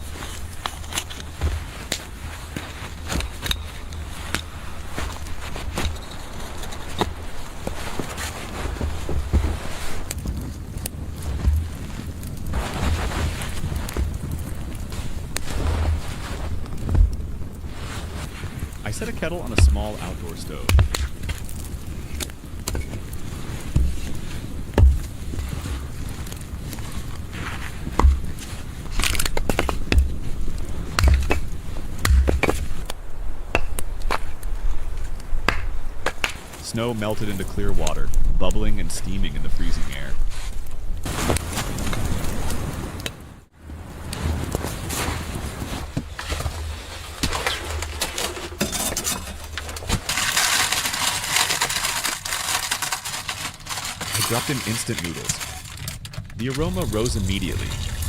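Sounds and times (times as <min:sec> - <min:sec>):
dense crackling hiss: 0:00.0 - 0:58.0
snow crunching: 0:00.0 - 0:58.0
dull thumps: 0:20.6 - 0:23.0, 0:23.7 - 0:26.4, 0:27.9 - 0:28.6, 0:29.3 - 0:32.8.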